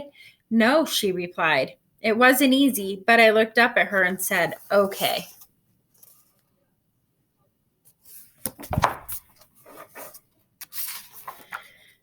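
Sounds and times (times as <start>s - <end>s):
paper page rustling: 4.4s - 6.5s, 8.0s - 11.9s.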